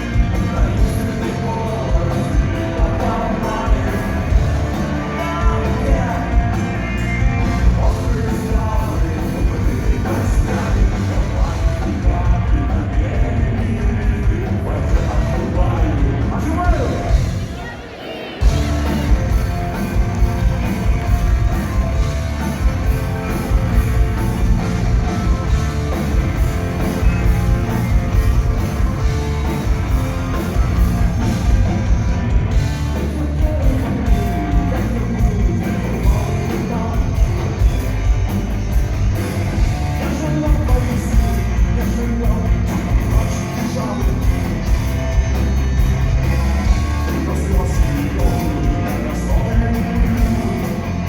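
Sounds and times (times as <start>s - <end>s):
person singing: 0.0s - 16.9s
heavy drums beat: 0.0s - 17.7s, 18.4s - 51.0s
electric guitars: 0.0s - 51.0s
rock band playing: 0.0s - 51.0s.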